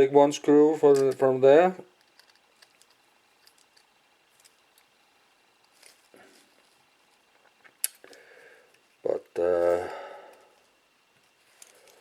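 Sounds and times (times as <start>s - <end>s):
soft rustle: 5.6s - 7.6s, 10.4s - 12.0s.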